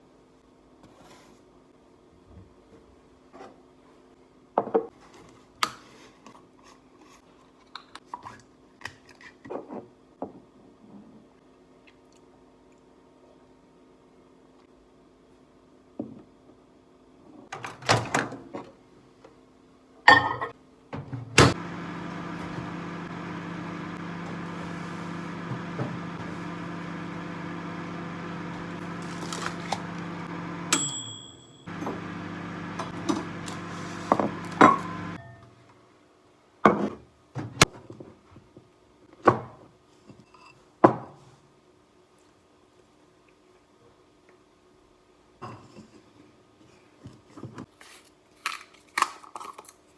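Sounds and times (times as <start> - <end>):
electric appliance humming: 21.4 - 35.2.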